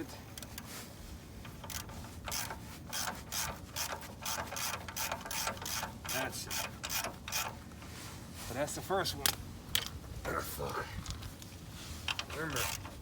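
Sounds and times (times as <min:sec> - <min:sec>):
ratchet wrench clicking: 0:01.5 - 0:07.5.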